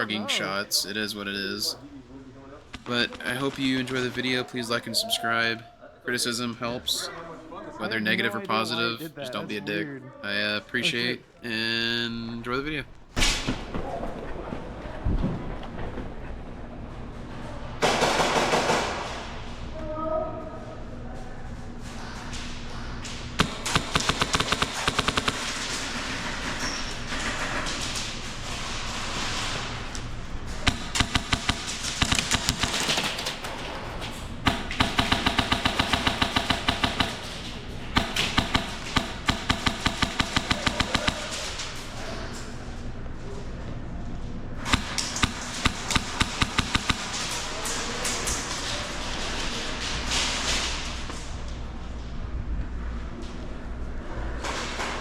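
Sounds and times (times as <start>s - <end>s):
airsoft rifle firing full auto: 23.4s - 27.8s, 30.6s - 42.1s, 44.7s - 47.7s.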